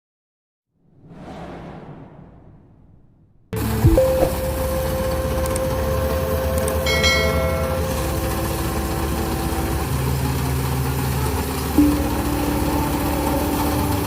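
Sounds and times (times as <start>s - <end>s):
combine harvester engine running: 3.6s - 14.0s.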